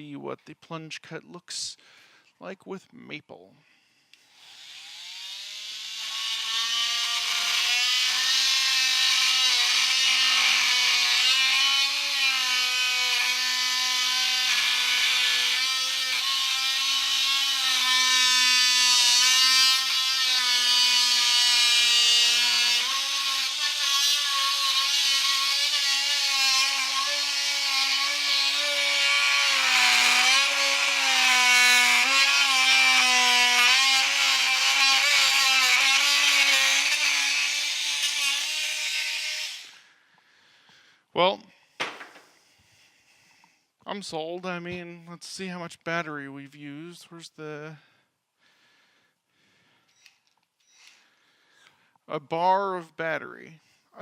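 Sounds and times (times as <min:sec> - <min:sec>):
oscillating multi-tool cutting wood: 0:04.1 - 0:39.9, 0:49.9 - 0:51.1.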